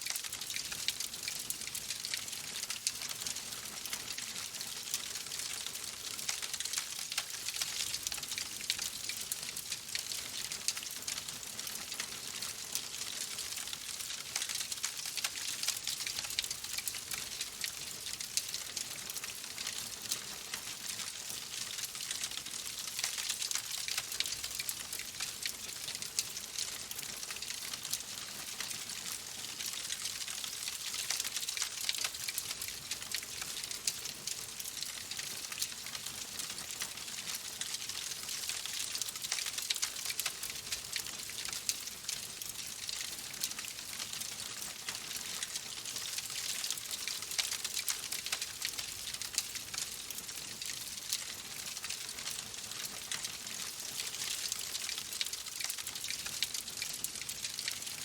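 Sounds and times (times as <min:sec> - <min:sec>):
wood fire crackling: 0:34.6 - 0:50.3.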